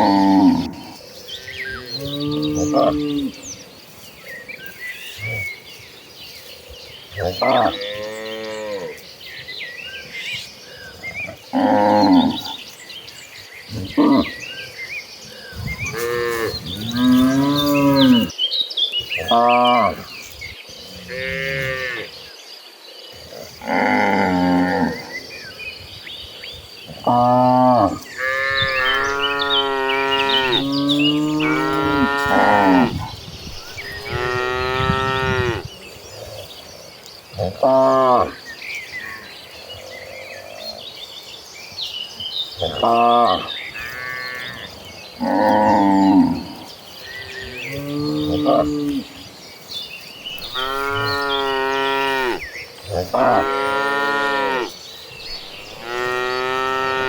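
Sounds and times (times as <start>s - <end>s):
cattle mooing: 27.0s - 33.0s, 33.7s - 35.7s, 50.4s - 54.7s, 55.4s - 57.0s.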